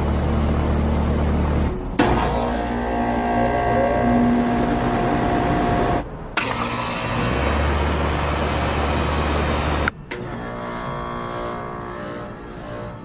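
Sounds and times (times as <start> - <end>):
deep low hum: 1.2 - 6.4.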